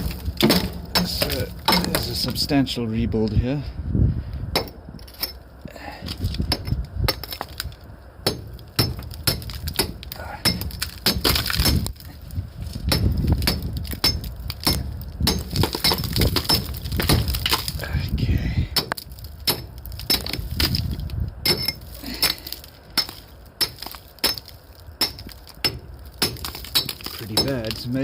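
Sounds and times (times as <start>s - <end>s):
concrete rubble knocking and clinking: 0.0s - 2.4s, 4.5s - 12.2s, 12.8s - 17.9s, 18.8s - 28.0s.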